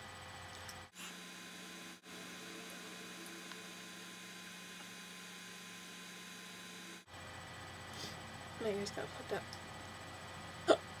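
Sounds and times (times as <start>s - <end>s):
faint electrical hum: 0.0s - 11.0s.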